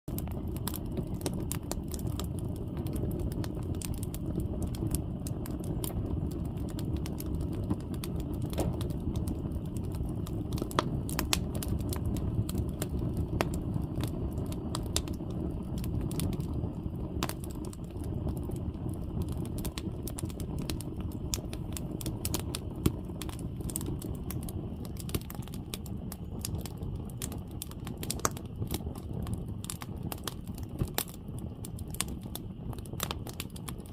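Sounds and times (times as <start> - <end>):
campfire flames rushing: 0.1 - 33.9
firewood crackling and popping: 0.1 - 33.9.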